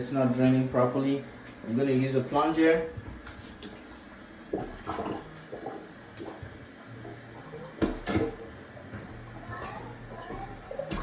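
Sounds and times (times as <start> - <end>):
water sloshing and gurgling: 2.9 - 11.0
plunger in toilet bowl: 4.5 - 11.0.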